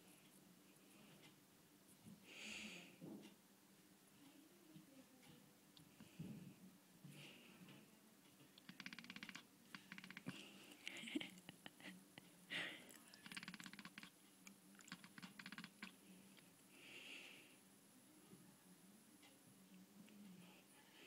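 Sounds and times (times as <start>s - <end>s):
kitten clicking: 13.1s - 16.0s.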